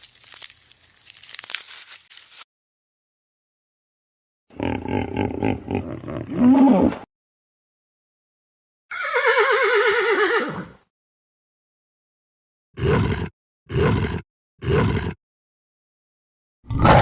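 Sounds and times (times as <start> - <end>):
horse whinnying: 8.9 - 10.8.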